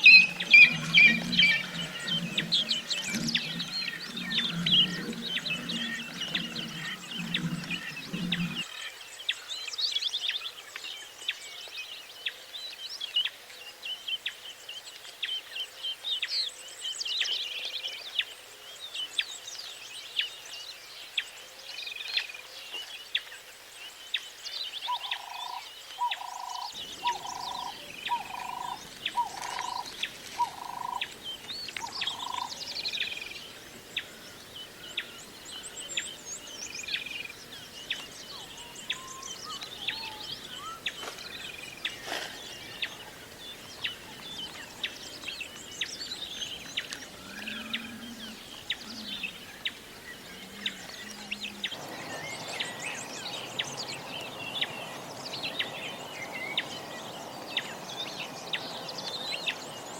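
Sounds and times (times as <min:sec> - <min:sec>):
small birds chirping: 0:00.0 - 0:08.7, 0:24.3 - 0:59.9.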